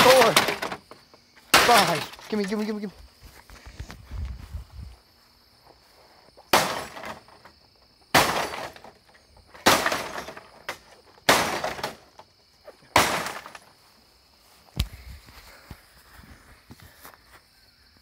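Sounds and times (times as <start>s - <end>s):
television smashing with breaking glass: 0.0s - 0.8s, 1.5s - 2.4s, 6.5s - 7.2s, 8.1s - 9.0s, 9.6s - 12.1s, 13.0s - 13.6s.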